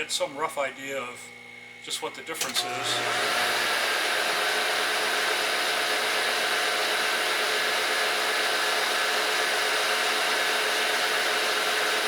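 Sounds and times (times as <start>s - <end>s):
lathe whirring: 2.4s - 12.0s.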